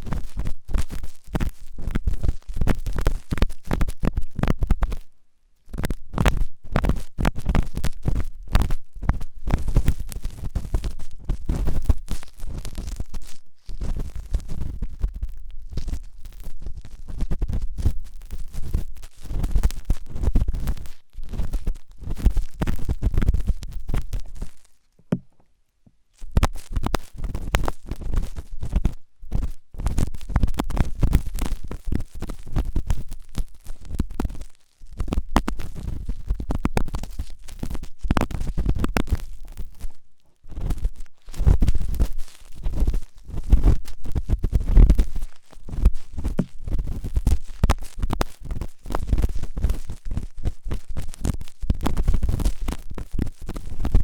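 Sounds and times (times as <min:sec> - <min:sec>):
ear pick scraping microphone: 0:05.8 - 0:25.5, 0:35.0 - 0:54.0.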